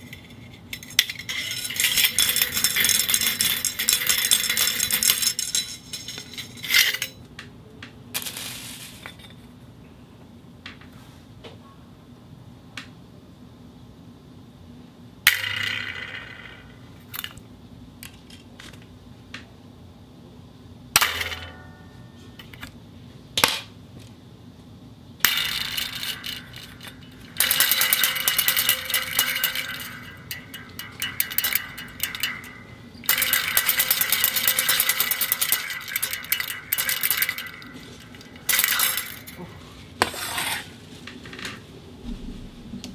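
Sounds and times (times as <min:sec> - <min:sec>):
rapid metallic rattling: 0:00.0 - 0:07.2, 0:25.2 - 0:39.4
ringing metal hits: 0:00.8 - 0:07.2, 0:21.0 - 0:22.6, 0:25.3 - 0:39.4.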